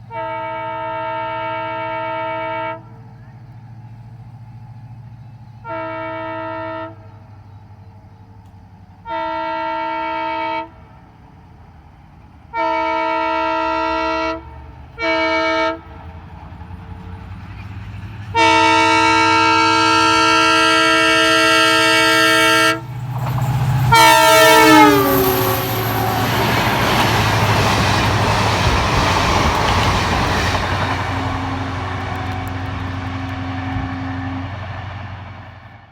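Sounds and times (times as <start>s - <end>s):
train horn: 0.0s - 3.4s, 5.5s - 7.5s, 9.0s - 11.0s, 12.5s - 16.1s, 18.2s - 22.9s, 23.8s - 35.7s
train rumbling past on rails: 0.0s - 35.9s.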